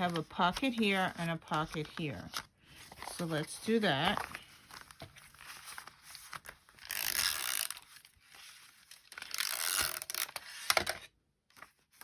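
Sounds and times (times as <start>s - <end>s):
paper handling: 0.0s - 9.4s.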